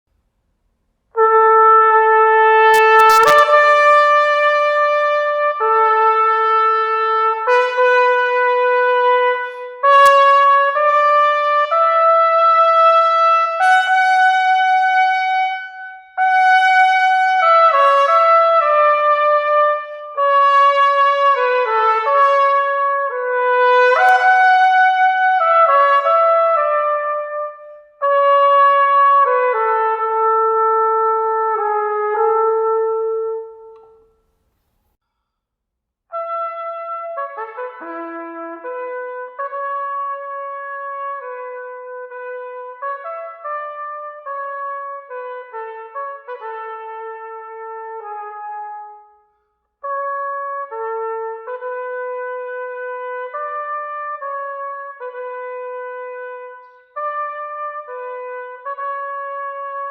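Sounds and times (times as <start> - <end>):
solo trumpet playing: 1.1 - 34.3, 36.1 - 49.2, 49.8 - 59.9
brief clicks: 2.8 - 3.4.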